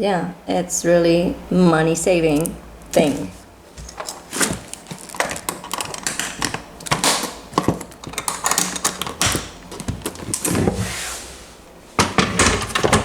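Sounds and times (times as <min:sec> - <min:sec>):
small objects clicking and rattling: 0:02.3 - 0:10.6.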